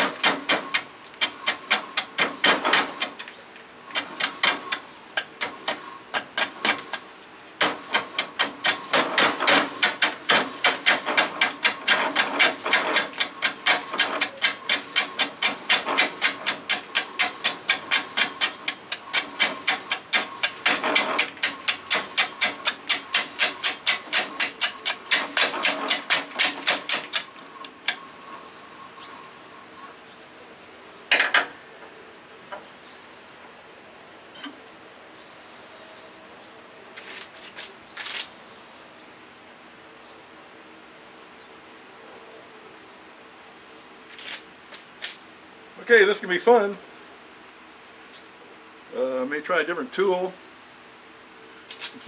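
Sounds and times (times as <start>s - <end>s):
lathe hum: 3.8s - 29.9s.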